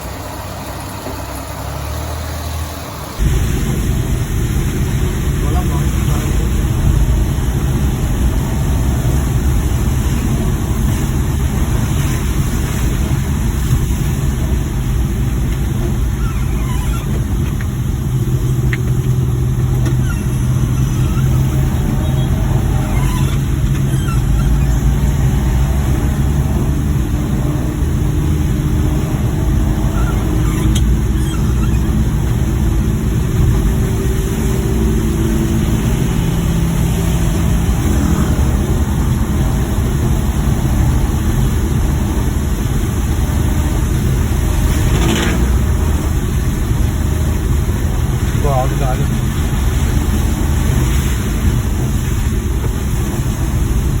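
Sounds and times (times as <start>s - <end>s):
van engine and road rumble: 0.0s - 54.0s.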